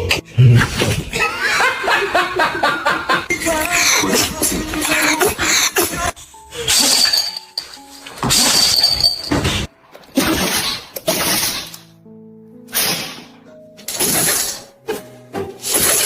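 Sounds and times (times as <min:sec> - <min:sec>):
music playing: 0:00.0 - 0:16.0.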